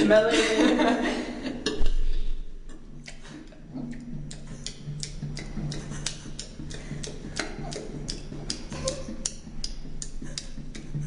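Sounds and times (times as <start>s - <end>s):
low hum: 0.0s - 11.0s
regular ticking: 2.6s - 11.0s.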